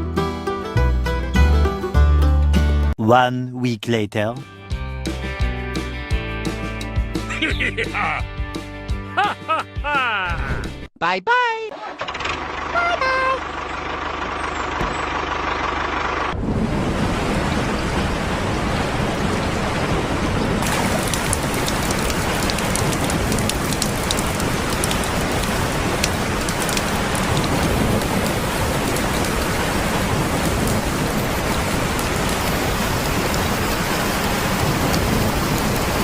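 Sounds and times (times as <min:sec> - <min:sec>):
steady water noise: 0:16.3 - 0:36.0.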